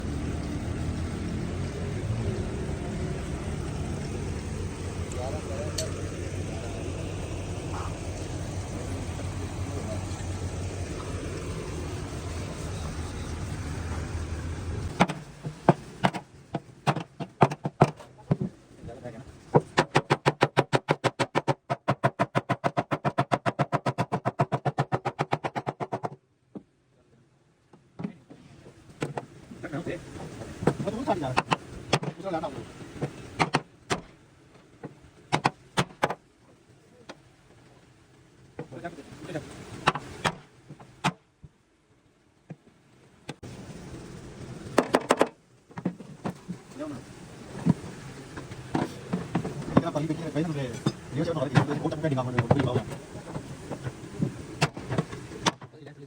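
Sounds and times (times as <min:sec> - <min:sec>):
sharp knocks: 0:15.0 - 0:18.5.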